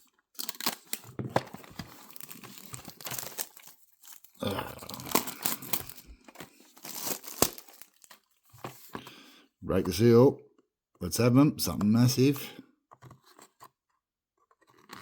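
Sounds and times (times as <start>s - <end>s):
plastic wrapping crinkling and tearing: 0.0s - 8.9s.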